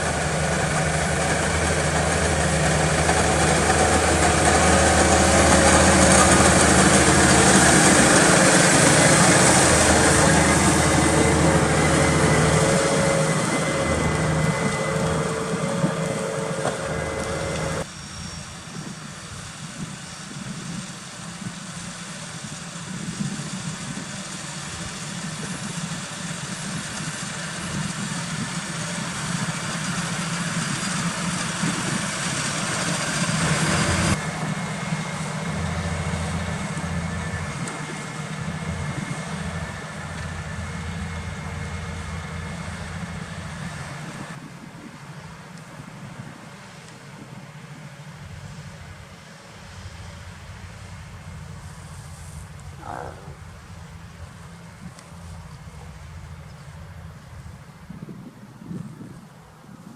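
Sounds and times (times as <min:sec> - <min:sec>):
tractor diesel engine running: 0:00.0 - 0:59.2.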